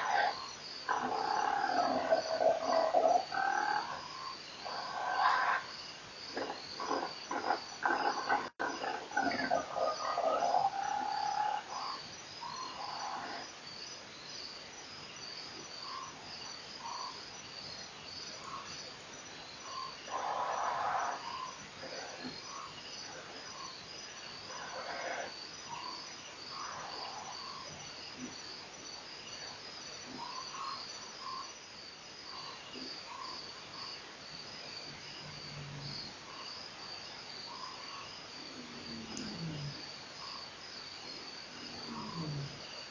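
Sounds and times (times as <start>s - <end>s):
crickets chirping: 0.0s - 42.9s.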